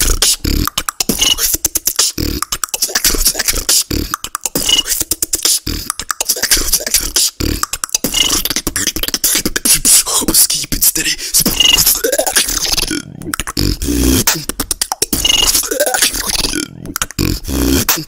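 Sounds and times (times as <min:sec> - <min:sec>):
person beatboxing: 0:00.0 - 0:18.0.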